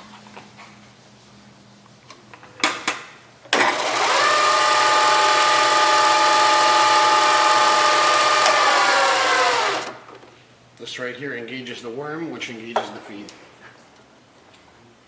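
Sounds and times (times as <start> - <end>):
milling machine motor whine: 3.6 - 10.0.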